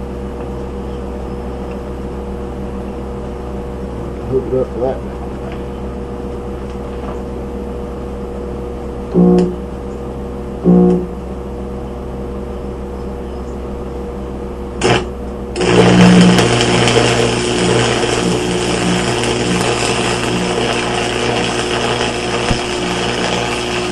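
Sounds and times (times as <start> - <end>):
welder humming: 0.0 - 11.5, 14.6 - 23.9
welding arc strikes: 9.1 - 9.7, 10.7 - 11.1, 14.8 - 23.9
welding rod crackling: 14.8 - 23.9.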